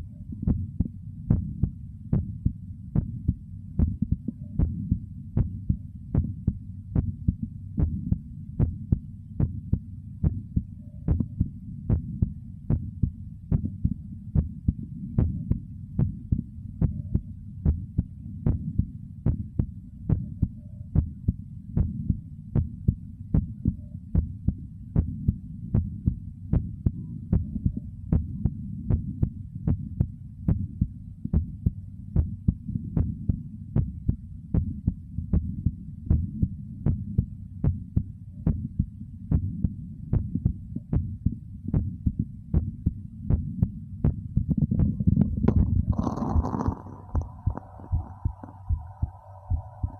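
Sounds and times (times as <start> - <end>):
heartbeat: 0.0 - 49.9
low internal rumble: 0.0 - 49.9
stomach gurgling: 45.2 - 48.6.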